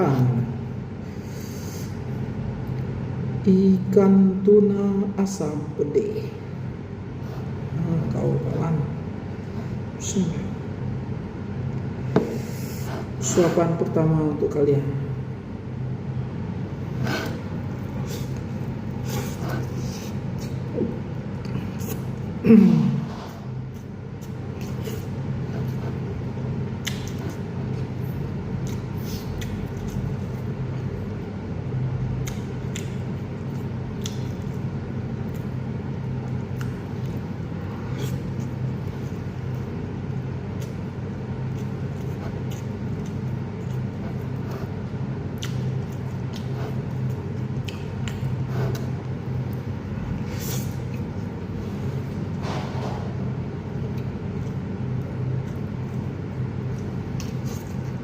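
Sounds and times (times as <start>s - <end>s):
steady low hum: 0.0s - 58.0s
person chewing: 16.7s - 22.4s, 23.1s - 31.3s, 32.1s - 52.4s, 53.6s - 58.0s.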